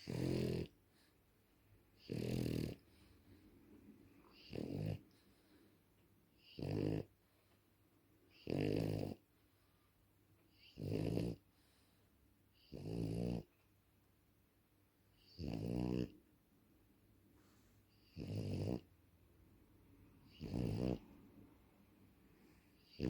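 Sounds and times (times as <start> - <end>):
dog snoring: 0.0 - 1.1, 2.0 - 3.1, 4.3 - 5.4, 6.4 - 7.2, 8.3 - 9.2, 10.5 - 11.7, 12.5 - 13.5, 15.2 - 16.2, 17.9 - 18.9, 20.3 - 21.2, 22.8 - 23.0.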